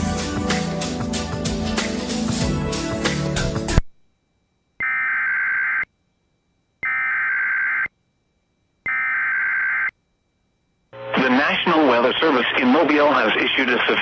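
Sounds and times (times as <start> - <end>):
background music: 0.0 - 3.8.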